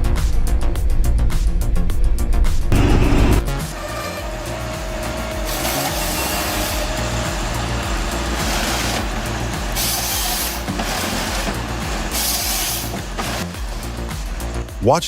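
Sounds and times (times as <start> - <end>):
heavy vehicle engine running: 2.5 - 15.0
air hissing: 2.8 - 14.7.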